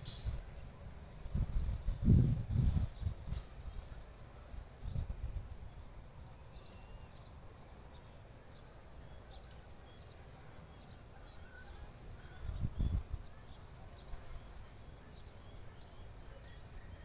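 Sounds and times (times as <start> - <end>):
wind rumble on microphone: 0.0 - 6.7, 11.6 - 14.9.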